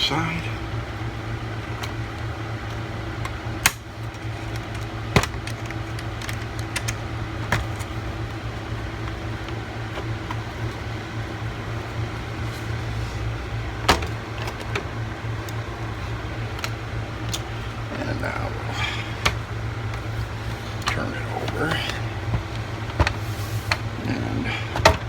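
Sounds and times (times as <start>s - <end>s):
steady low hum: 0.0s - 25.0s
plastic clips snapping: 3.2s - 7.9s.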